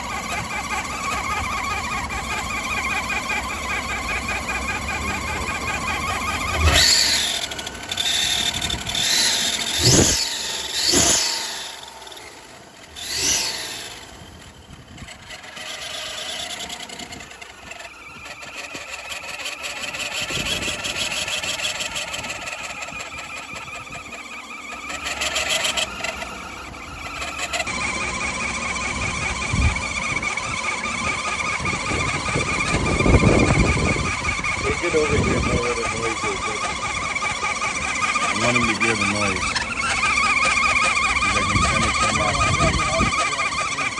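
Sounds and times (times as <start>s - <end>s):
car engine running with pulsing tone: 0.0s - 43.9s
squeal-like sounds: 5.9s - 14.1s.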